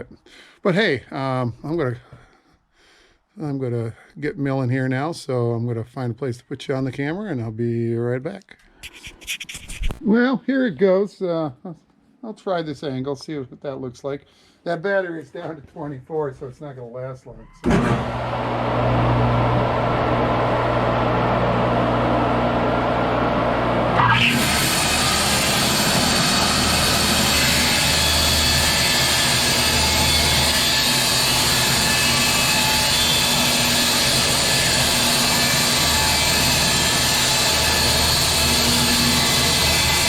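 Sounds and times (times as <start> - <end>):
bandsaw blade cutting log: 17.6 - 18.3, 23.8 - 40.0
bandsaw sawmill running: 17.6 - 40.0.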